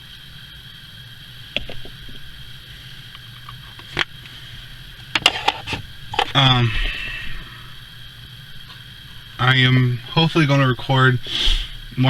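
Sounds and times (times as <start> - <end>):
faint high-pitched hum: 0.0 - 12.0
light handling noises: 2.8 - 7.0.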